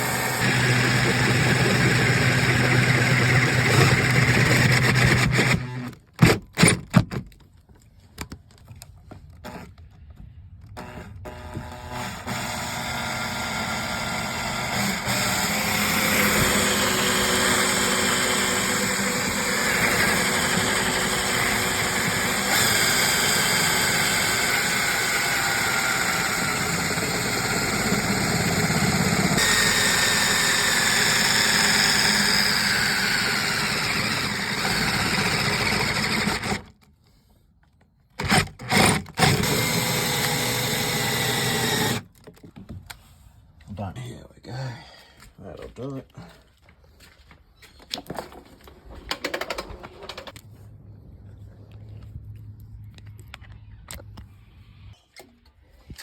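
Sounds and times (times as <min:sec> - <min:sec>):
power tool motor whining: 0:00.0 - 0:06.8, 0:10.7 - 0:36.8, 0:38.2 - 0:42.1.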